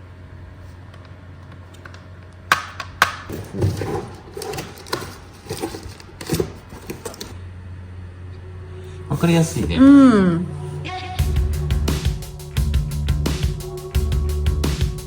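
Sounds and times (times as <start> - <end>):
faint low hum: 3.3 - 15.0.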